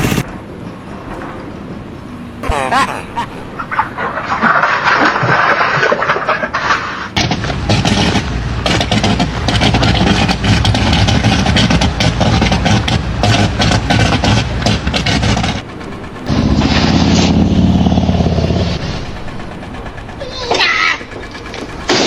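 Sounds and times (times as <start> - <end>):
heavy engine running: 0.0 - 2.4, 3.3 - 22.0
irregular clattering and knocking: 4.3 - 16.7, 19.5 - 22.0.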